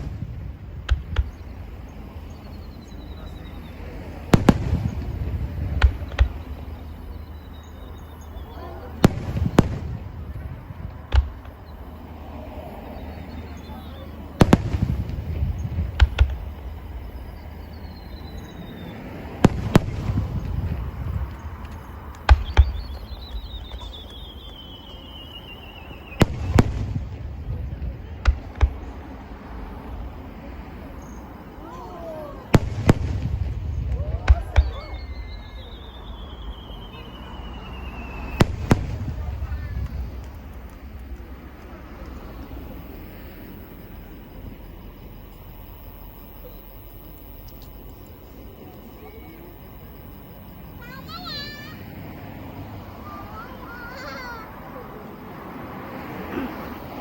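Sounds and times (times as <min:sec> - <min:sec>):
fireworks bangs: 0:00.0 - 0:45.3
warbling falling whistle: 0:31.6 - 0:39.6.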